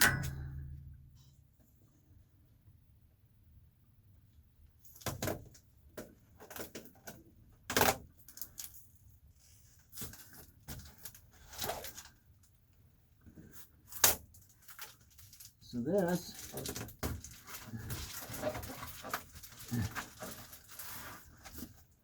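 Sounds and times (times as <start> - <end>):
foil insulation crinkling: 8.2 - 12.6, 13.4 - 22.0.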